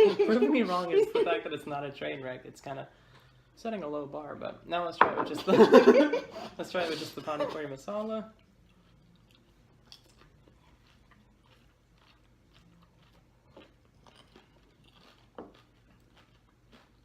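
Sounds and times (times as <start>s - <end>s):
crunching and chewing of crisp shell: 8.4s - 17.0s.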